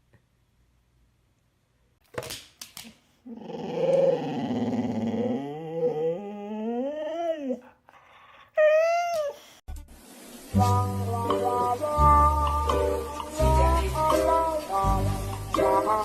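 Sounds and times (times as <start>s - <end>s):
dog growling: 3.3s - 7.8s.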